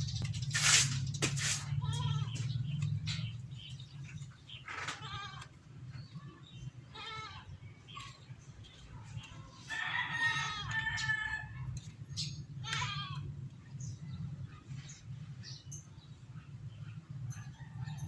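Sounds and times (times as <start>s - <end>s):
farm animal calling: 1.4s - 8.3s, 9.1s - 13.4s.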